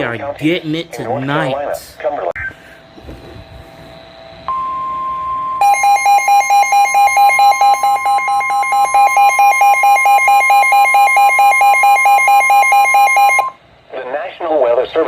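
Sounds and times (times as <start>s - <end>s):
steady warning alarm tone: 3.6s - 13.8s
loud pulsing alarm beeps: 4.5s - 13.6s.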